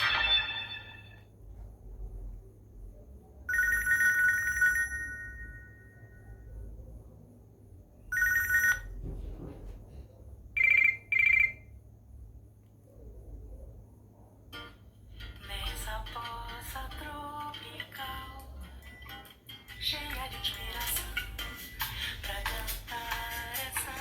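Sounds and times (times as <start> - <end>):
two-tone electronic phone ring: 3.5 - 6.1, 8.1 - 9.0, 10.6 - 11.7.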